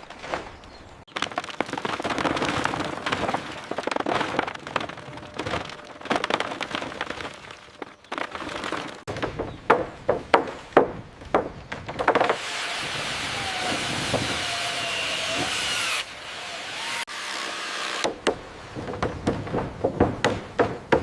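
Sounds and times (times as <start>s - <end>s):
knocks on wood: 18.0s - 21.0s.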